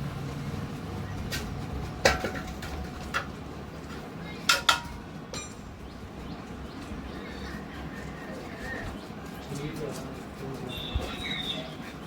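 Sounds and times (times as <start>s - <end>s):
metal tools clinking and clanking: 1.3s - 5.7s.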